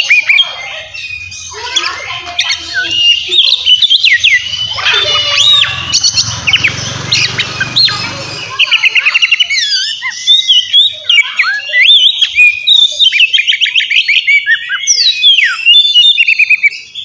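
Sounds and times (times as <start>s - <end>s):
bird singing whistled notes: 0.0s - 17.0s
harsh bird calls: 0.0s - 17.0s.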